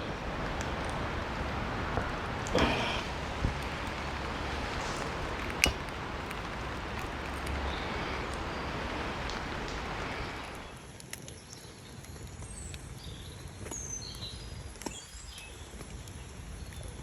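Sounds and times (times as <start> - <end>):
steady hiss: 0.0 - 10.8.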